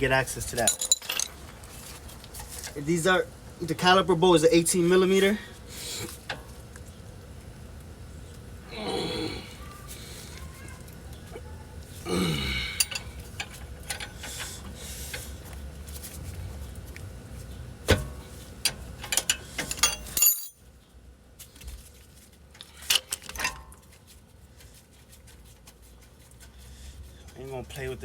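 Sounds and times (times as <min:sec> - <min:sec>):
metal tools clinking on brake caliper: 0:00.5 - 0:01.5, 0:12.7 - 0:14.5, 0:19.0 - 0:20.6
short falling grunt-like sound: 0:08.7 - 0:09.6, 0:12.1 - 0:12.8.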